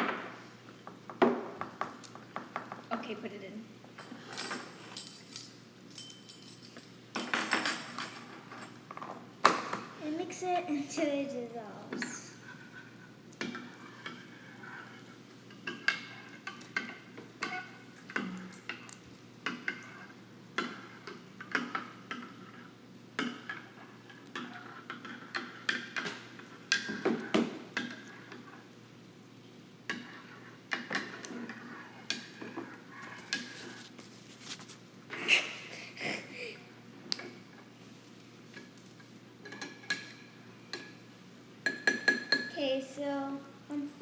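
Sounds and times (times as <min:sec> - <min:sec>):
spoon stirring in a bowl: 0:11.9 - 0:28.8, 0:29.8 - 0:34.9, 0:37.1 - 0:41.0, 0:41.6 - 0:42.6.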